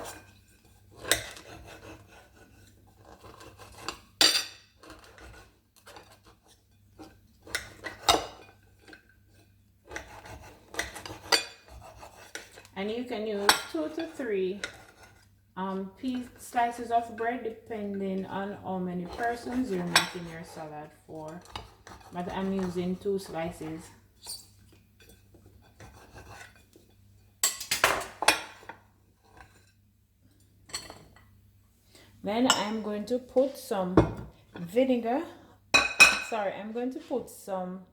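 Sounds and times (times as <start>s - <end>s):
knife sawing through bread: 0.0s - 4.2s, 4.8s - 6.5s, 9.8s - 12.7s, 25.8s - 26.6s
dishes and utensils scraping and clinking: 0.0s - 31.4s.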